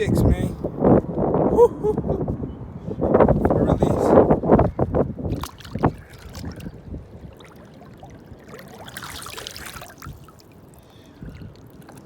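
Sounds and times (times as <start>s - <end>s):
water splashing: 5.2s - 12.0s
water trickling and dripping: 5.3s - 12.0s.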